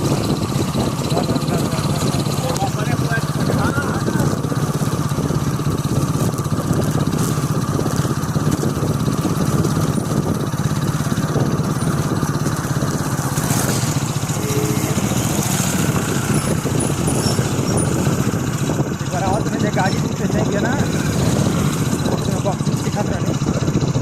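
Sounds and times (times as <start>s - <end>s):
road noise: 0.0s - 24.0s
vehicle engine running: 0.0s - 24.0s.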